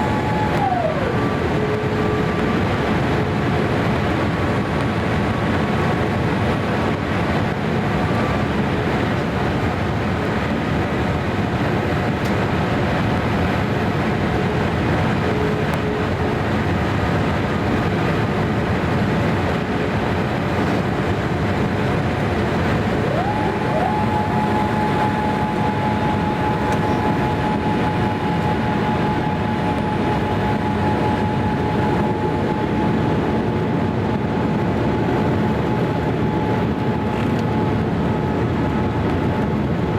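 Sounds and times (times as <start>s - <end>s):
airplane cabin engine noise: 0.0s - 39.9s
rising whine: 0.0s - 39.9s.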